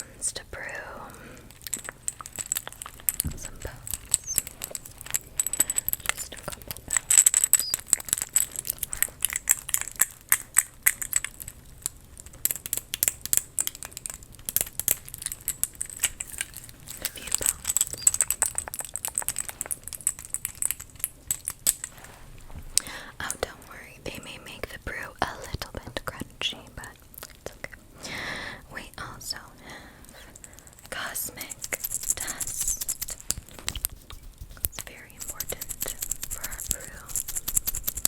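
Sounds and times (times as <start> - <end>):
scratching on small props: 1.5 - 11.4, 12.5 - 22.1, 31.4 - 38.0
crisp tapping on small props: 1.5 - 21.9, 30.4 - 38.0
crinkly rustles: 14.9 - 22.8.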